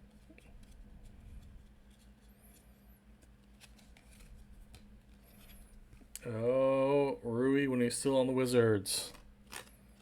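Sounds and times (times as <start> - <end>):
low room hum: 0.0 - 10.0
cards sliding rustle: 0.1 - 6.1, 9.1 - 10.0.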